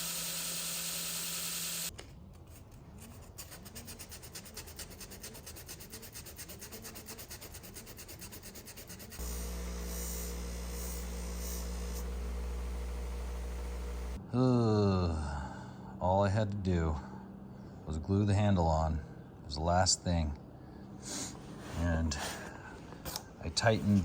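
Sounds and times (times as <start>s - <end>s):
steady low hum: 9.1s - 24.0s.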